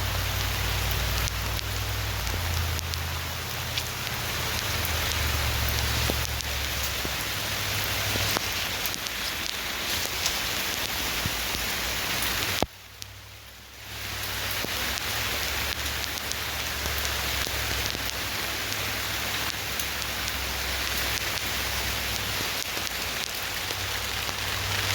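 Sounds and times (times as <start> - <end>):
steady rain with drop taps: 0.0 - 24.9.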